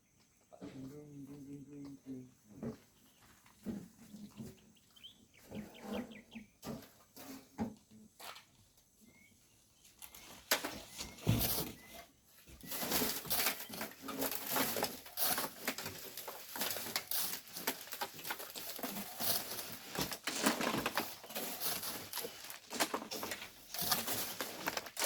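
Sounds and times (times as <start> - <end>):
crunching and scraping strokes: 9.8 - 25.0.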